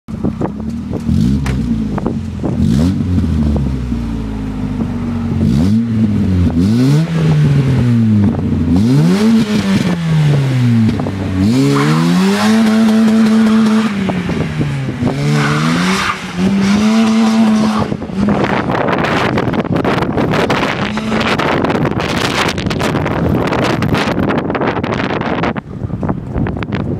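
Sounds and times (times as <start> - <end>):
wind noise on microphone: 0.1 - 26.9
car engine revving: 0.4 - 25.6.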